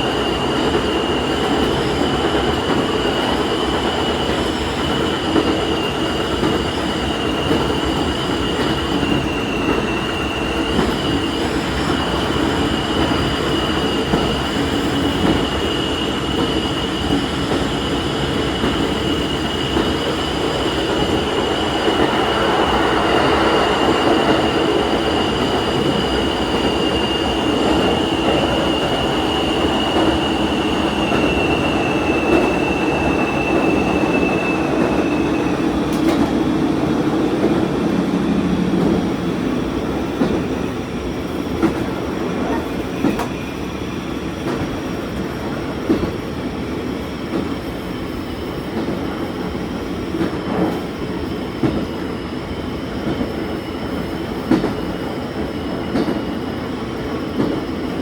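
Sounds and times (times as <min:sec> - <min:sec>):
railcar engine and wheels rumbling: 0:00.0 - 0:58.0
high whine: 0:19.1 - 0:36.3.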